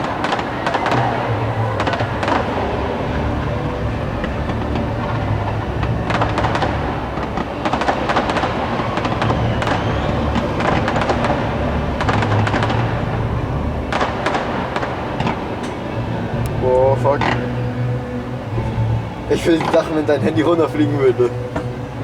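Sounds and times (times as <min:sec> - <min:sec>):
fireworks bangs and crackles: 0:00.0 - 0:17.6
low rumble of music: 0:00.0 - 0:22.0.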